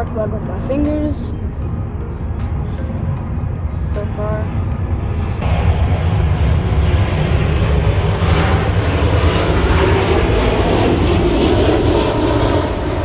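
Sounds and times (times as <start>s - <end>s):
engine droning: 0.0s - 13.0s.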